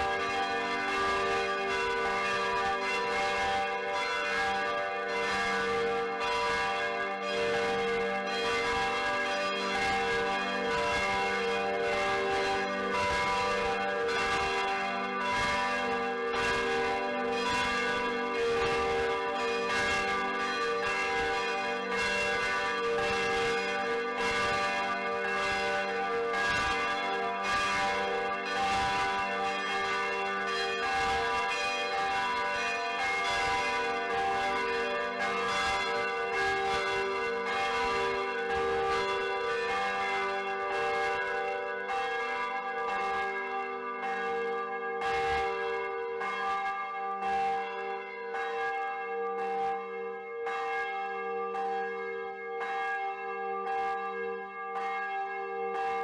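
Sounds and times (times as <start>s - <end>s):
church bell ringing: 0.0s - 56.0s.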